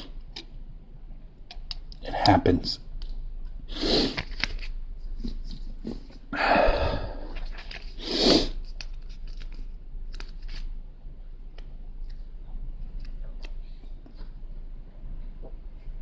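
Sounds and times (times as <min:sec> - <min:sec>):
light rustling of sticker sheet: 0:07.3 - 0:10.8.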